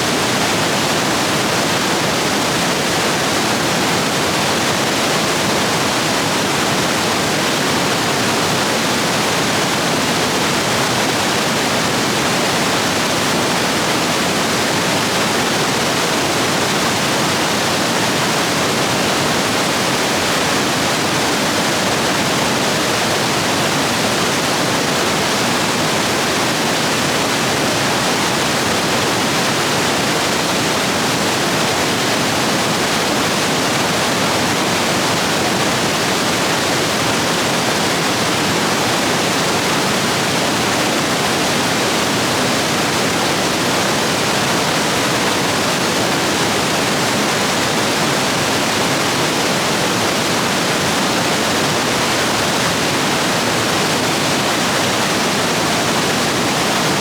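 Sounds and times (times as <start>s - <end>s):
stream rushing over rapids: 0.0s - 57.0s.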